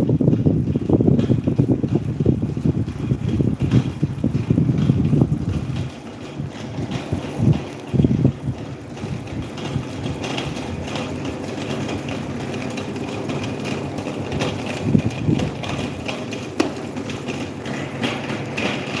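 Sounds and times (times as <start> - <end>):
low bumps: 0.0 - 12.6
electric fan humming and whirring: 0.0 - 19.0.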